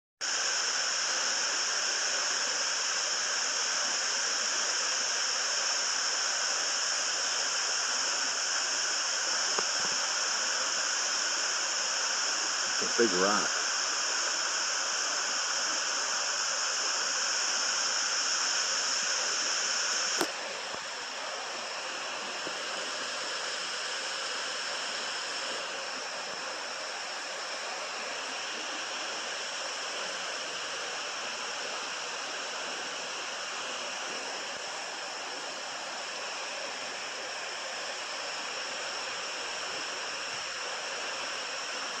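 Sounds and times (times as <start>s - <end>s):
click: 9.6s - 10.0s, 20.1s - 20.3s.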